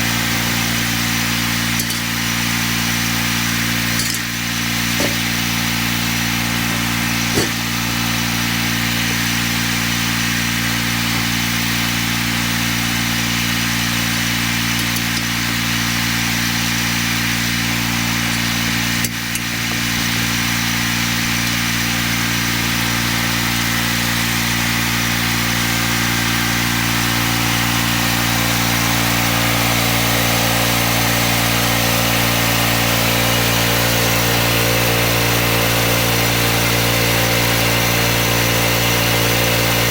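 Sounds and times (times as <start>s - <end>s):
sawmill engine running: 0.0s - 39.9s
band blade sawing wood: 3.7s - 5.8s, 6.4s - 8.3s.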